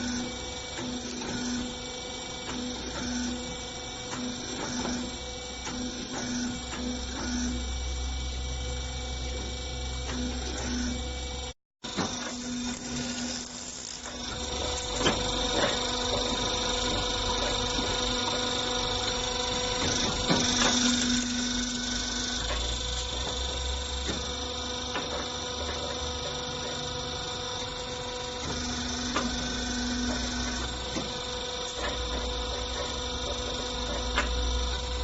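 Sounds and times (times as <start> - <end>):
machine electric hum: 0.0 - 35.0
machine knocks and clicks: 19.5 - 21.8, 22.4 - 26.9, 28.4 - 34.9.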